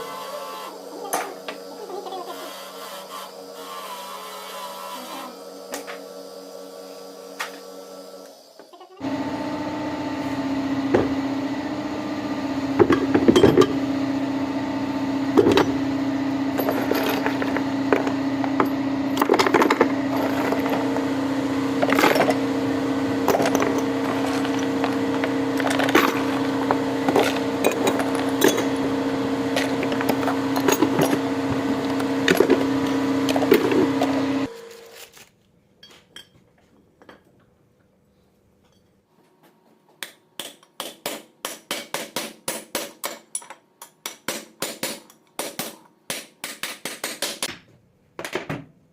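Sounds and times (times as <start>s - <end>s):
machine humming: 0.0s - 34.9s.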